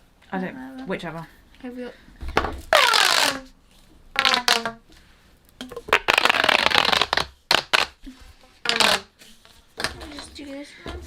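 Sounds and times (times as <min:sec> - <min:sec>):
plastic pop tubes ratcheting clicks: 0:05.6 - 0:08.0, 0:08.6 - 0:09.1.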